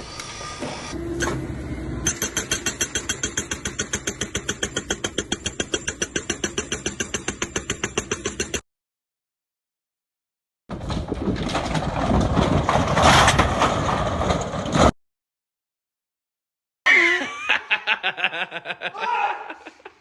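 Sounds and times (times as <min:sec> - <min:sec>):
engine chugging: 0:00.9 - 0:08.6.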